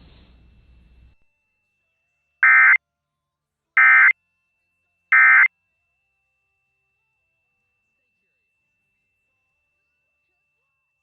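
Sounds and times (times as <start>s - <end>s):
digital data tone bursts: 2.4s - 2.8s, 3.8s - 4.1s, 5.2s - 5.5s.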